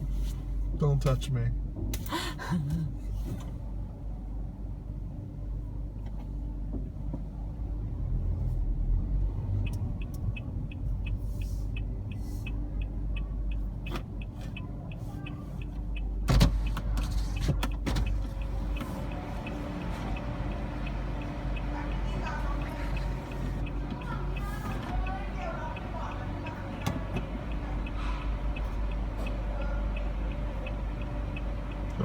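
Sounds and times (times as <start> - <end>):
car engine low rumble: 0.0 - 32.0
high regular ticking: 18.1 - 32.0.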